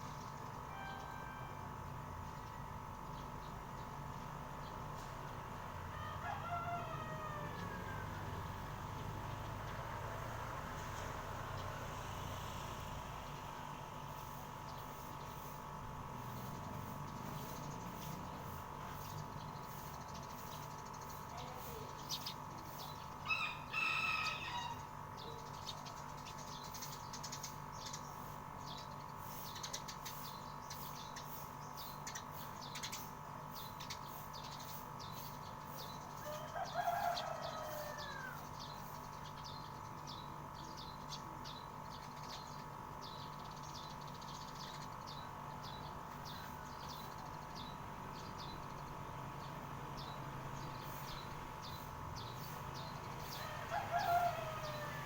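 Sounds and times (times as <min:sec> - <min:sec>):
steady hum: 0:00.0 - 0:06.2
loud bird calls: 0:04.6 - 0:09.9, 0:16.2 - 0:55.0
birds chirping: 0:16.3 - 0:55.0.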